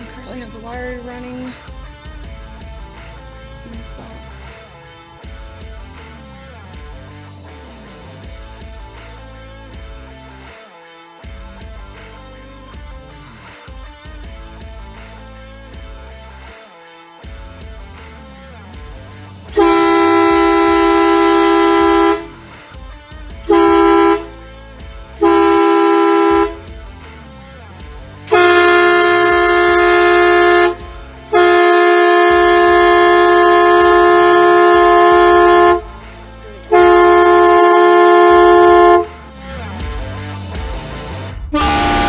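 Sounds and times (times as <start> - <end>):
air horn blasts: 19.6 - 22.4, 23.5 - 24.3, 25.2 - 26.6, 28.3 - 35.9, 36.7 - 39.1, 41.6 - 42.0.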